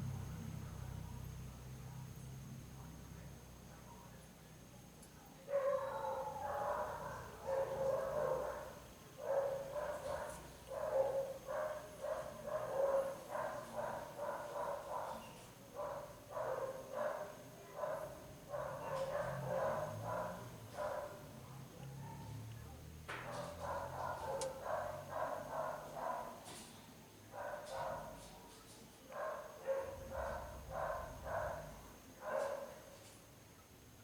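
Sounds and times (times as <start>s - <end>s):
dog barking: 5.4s - 22.4s, 23.1s - 26.6s, 27.3s - 28.4s, 29.1s - 33.0s.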